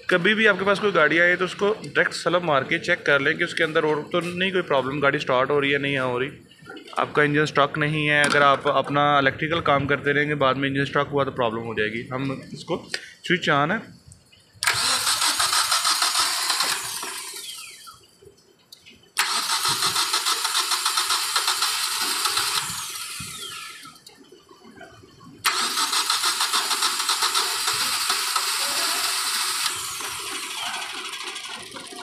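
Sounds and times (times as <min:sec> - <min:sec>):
car starter cranking: 0:14.6 - 0:18.0, 0:19.2 - 0:24.2, 0:25.4 - 0:32.0
starter whine winding down: 0:14.6 - 0:18.1, 0:19.2 - 0:24.2, 0:25.4 - 0:32.0
engine running unevenly: 0:25.4 - 0:32.0.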